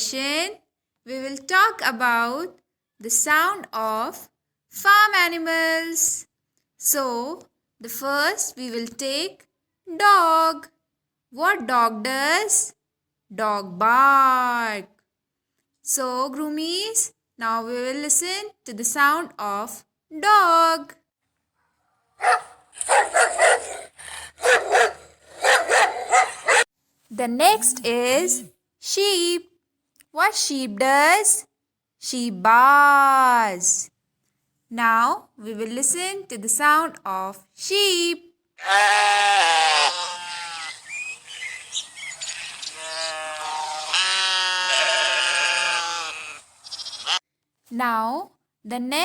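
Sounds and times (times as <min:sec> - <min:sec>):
dog barking: 0:22.2 - 0:26.7
sheep bleating: 0:38.6 - 0:41.1, 0:42.6 - 0:47.2
faint chirps: 0:40.6 - 0:43.1.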